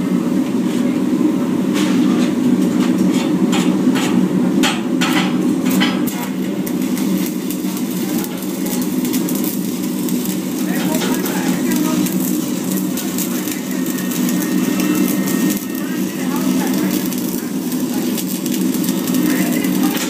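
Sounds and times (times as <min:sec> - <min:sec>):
welding arc crackling and popping: 0:04.6 - 0:20.0.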